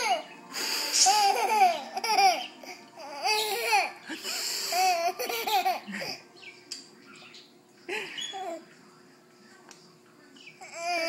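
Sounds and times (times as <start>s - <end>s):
baby laughing: 0.0s - 0.3s, 0.9s - 6.3s, 10.6s - 11.0s.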